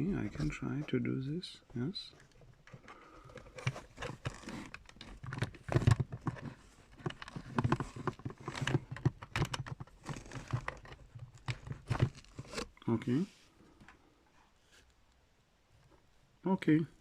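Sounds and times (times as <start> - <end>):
plastic equipment clicking and rattling: 2.3 - 12.6.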